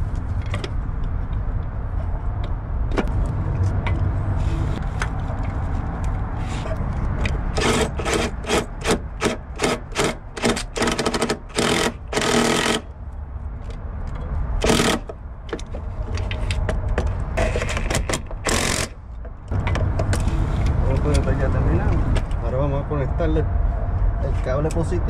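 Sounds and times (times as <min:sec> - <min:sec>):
ratchet wrench rasping: 0:07.5 - 0:12.9, 0:14.6 - 0:15.2, 0:17.4 - 0:19.0.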